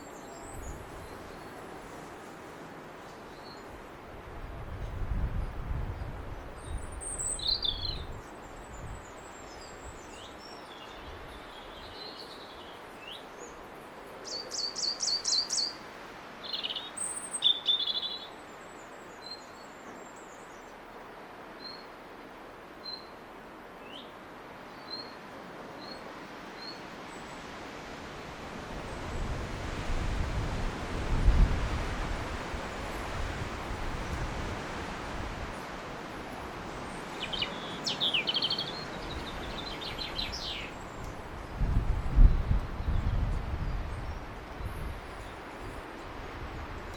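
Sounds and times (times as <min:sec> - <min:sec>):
robin singing: 0:06.6 - 0:13.6, 0:14.2 - 0:15.8, 0:16.4 - 0:20.6, 0:36.7 - 0:41.2.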